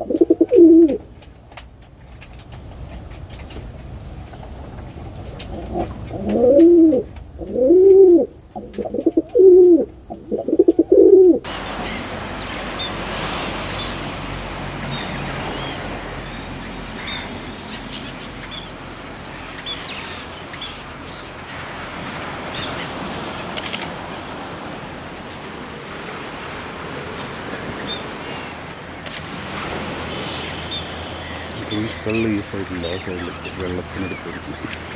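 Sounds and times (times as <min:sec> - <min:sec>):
dove cooing: 0:00.0 - 0:01.1, 0:04.8 - 0:11.5
steady outdoor hiss: 0:00.0 - 0:34.9
small birds chirping: 0:02.0 - 0:21.8, 0:30.0 - 0:34.9.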